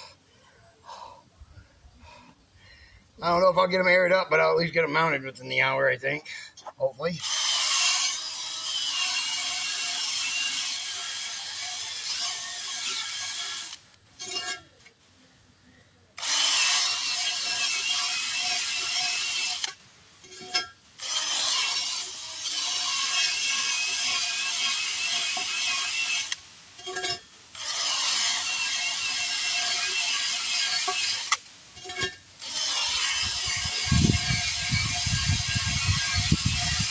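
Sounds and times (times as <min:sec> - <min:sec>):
power tool scouring steel rim: 0:07.2 - 0:14.6, 0:16.2 - 0:36.9.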